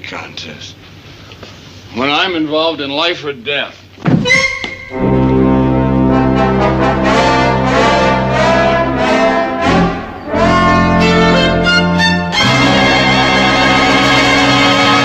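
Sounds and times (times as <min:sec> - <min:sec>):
orchestral brass chords: 0:04.2 - 0:15.0.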